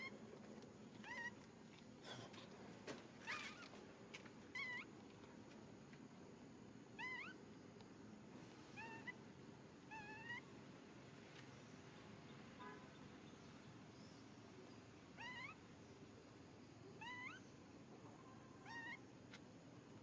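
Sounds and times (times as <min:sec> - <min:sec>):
baby monkey crying: 0:09.9 - 0:10.5, 0:15.2 - 0:15.6, 0:17.0 - 0:17.5, 0:18.6 - 0:19.0.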